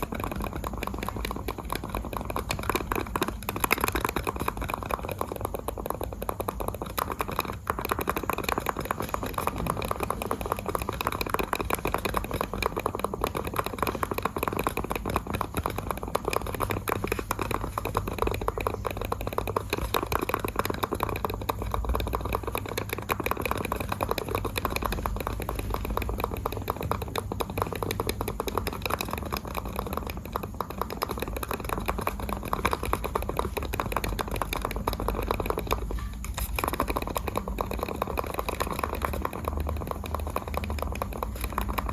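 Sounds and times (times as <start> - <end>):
mouse buttons clicking rapidly: 0.0 - 41.9.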